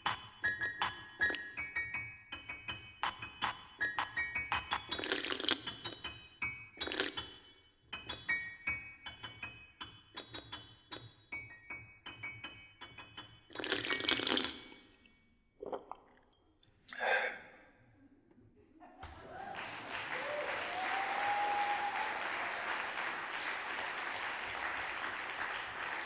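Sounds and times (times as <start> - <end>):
bell-like keyboard notes and clicks: 0.0 - 5.0, 8.0 - 13.6.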